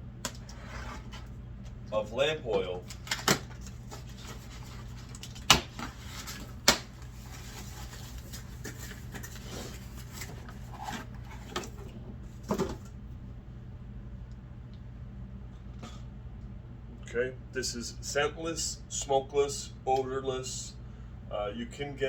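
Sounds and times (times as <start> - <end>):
steady low hum: 0.0 - 22.0
packaging rustling: 2.8 - 11.7.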